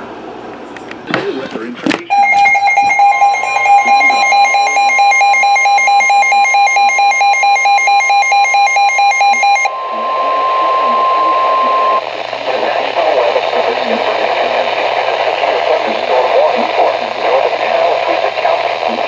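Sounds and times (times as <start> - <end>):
steady high alarm tone: 2.1 - 12.0
rapidly pulsing electronic beep: 2.1 - 14.5.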